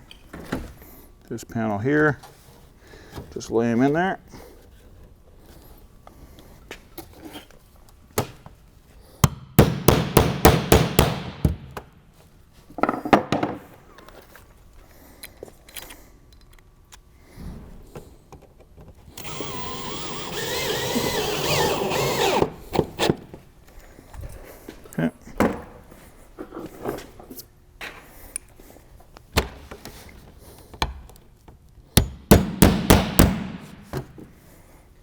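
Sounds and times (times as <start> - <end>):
rasping metal scraping: 19.2 - 23.2.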